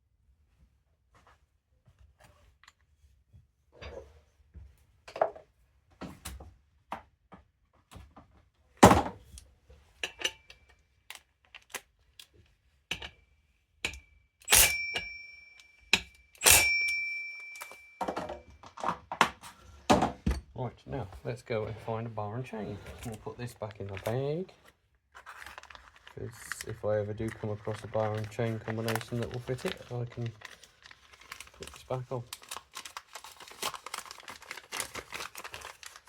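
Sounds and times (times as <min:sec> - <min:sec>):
metal tools clicking on workbench: 0:13.8 - 0:18.8.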